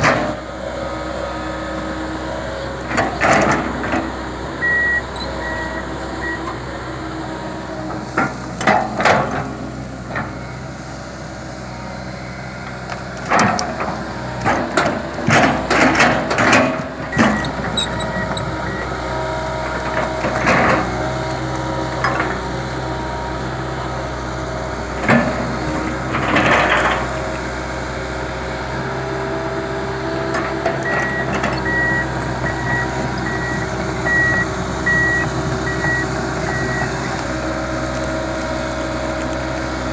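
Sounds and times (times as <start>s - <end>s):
excavator diesel engine running: 0.0s - 39.9s
high reversing alarm beeps: 4.6s - 6.5s, 17.1s - 18.9s, 30.8s - 37.1s.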